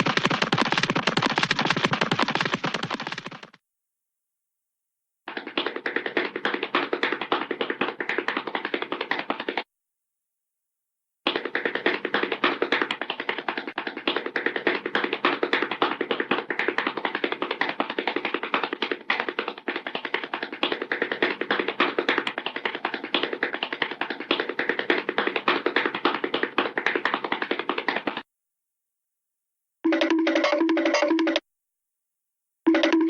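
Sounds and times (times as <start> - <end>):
rapid clatter of taps: 0.0 - 3.6, 5.3 - 9.6, 11.3 - 28.2.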